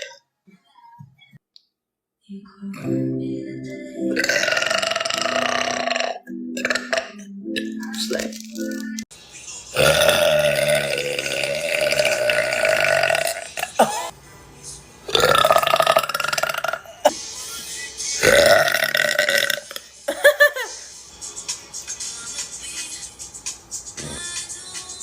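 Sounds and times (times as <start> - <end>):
person belching loudly: 4.1 - 7.3, 9.8 - 13.9, 15.1 - 17.1, 18.2 - 19.8.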